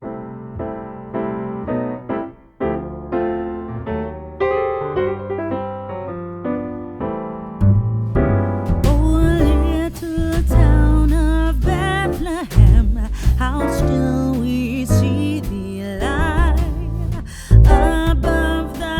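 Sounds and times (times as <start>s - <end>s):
piano single notes: 0.0s - 18.9s
bass: 2.7s - 18.9s
person singing: 8.9s - 18.9s.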